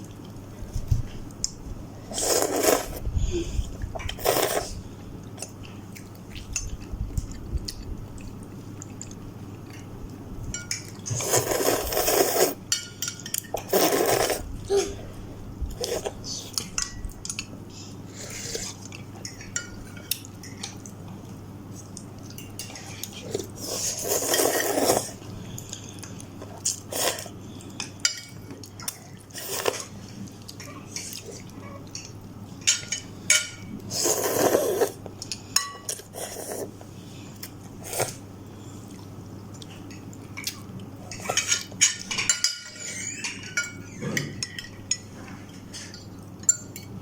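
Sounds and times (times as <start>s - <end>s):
cutlery clinking against a bowl: 10.5s - 11.7s, 12.7s - 14.1s, 15.9s - 17.5s, 19.2s - 20.9s, 27.8s - 29.0s, 31.9s - 33.7s, 35.2s - 36.1s, 39.8s - 47.0s.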